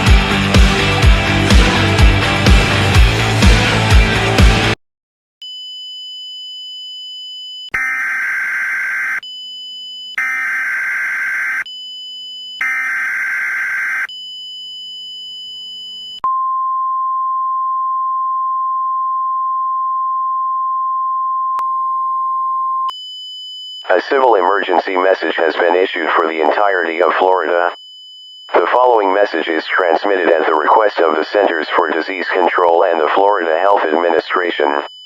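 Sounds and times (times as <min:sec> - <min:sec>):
screeching data tones: 0:07.7 - 0:09.2, 0:10.2 - 0:11.6.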